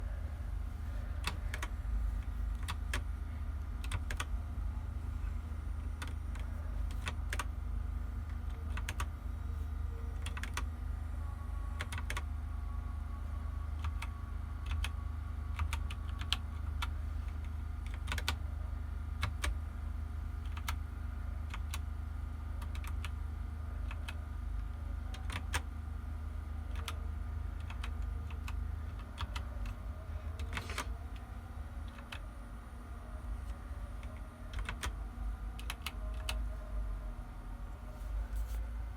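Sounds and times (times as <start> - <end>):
steady low hum: 0.0 - 38.9
mechanical keyboard clicking: 3.8 - 4.3, 5.9 - 7.5, 8.3 - 9.1, 10.2 - 10.7, 11.8 - 12.3, 13.8 - 14.9, 15.5 - 16.9, 17.8 - 18.4, 19.2 - 19.6, 20.4 - 20.8, 22.6 - 23.2, 25.1 - 25.7, 26.7 - 27.0, 27.6 - 29.8, 34.0 - 35.0, 35.6 - 36.5.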